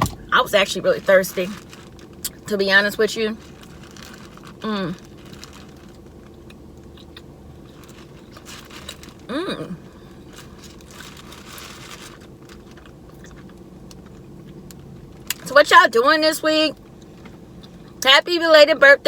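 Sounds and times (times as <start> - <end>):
person chewing and crunching: 3.4 - 15.4
person humming: 9.3 - 9.8.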